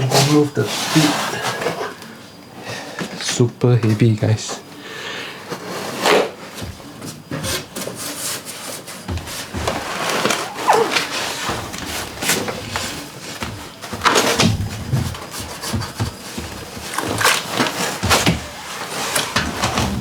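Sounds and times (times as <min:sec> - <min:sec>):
cardboard and foam scraping: 0:07.4 - 0:20.0.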